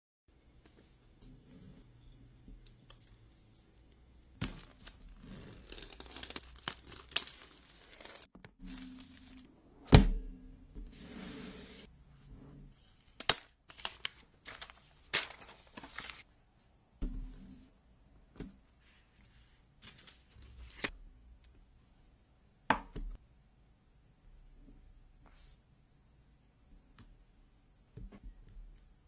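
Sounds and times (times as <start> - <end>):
packaging rustling and tearing: 4.4 - 9.3, 13.1 - 16.3.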